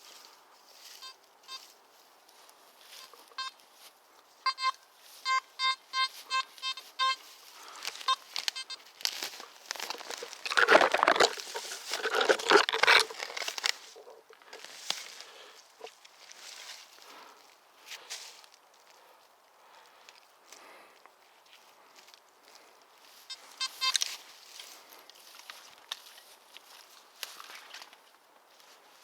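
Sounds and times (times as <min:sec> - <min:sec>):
metal detector short beeps: 0:01.0 - 0:01.6, 0:03.0 - 0:03.6, 0:04.5 - 0:07.3, 0:08.0 - 0:08.8, 0:23.3 - 0:24.0
rustling through ground litter: 0:06.9 - 0:29.0.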